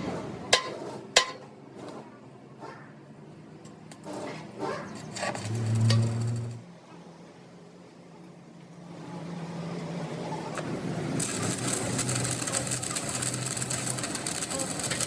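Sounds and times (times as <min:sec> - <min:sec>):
crackling hiss of metalworking: 0:03.9 - 0:06.6, 0:10.6 - 0:15.0
workshop machinery humming: 0:04.0 - 0:06.6, 0:10.6 - 0:15.0.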